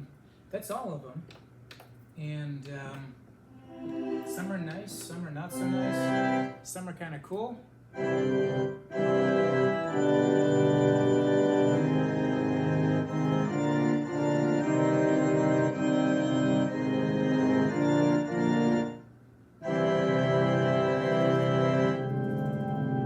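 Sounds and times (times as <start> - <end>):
organ chords on digital piano: 3.6 - 6.8, 7.9 - 23.0.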